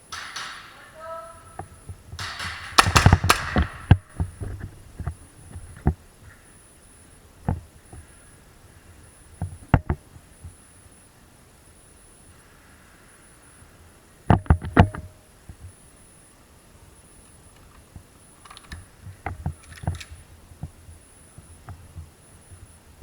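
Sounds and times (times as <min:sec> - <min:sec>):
sharp clicks and knocks: 0:00.0 - 0:00.9, 0:01.5 - 0:06.0, 0:17.6 - 0:20.8.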